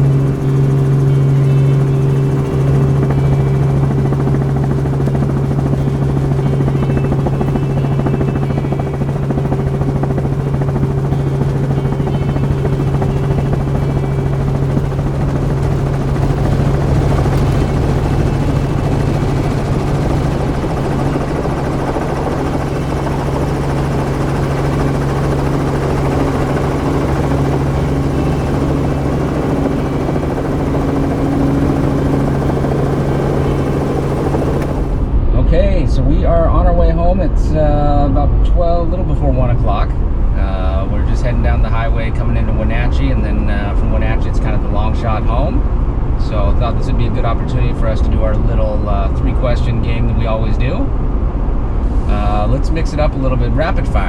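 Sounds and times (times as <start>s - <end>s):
vehicle engine drone from cabin: 0.0s - 35.5s.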